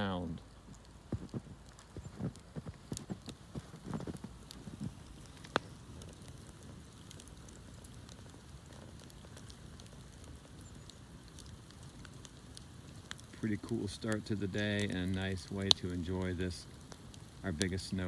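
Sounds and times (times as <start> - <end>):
bonfire crackling and popping: 0.0 - 18.0
low steady hiss: 0.0 - 18.0.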